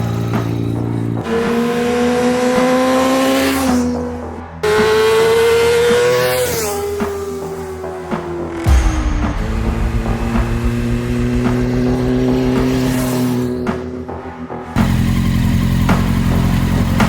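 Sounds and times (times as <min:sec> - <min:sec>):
motorcycle engine revving high: 0:08.4 - 0:14.1, 0:14.8 - 0:17.0.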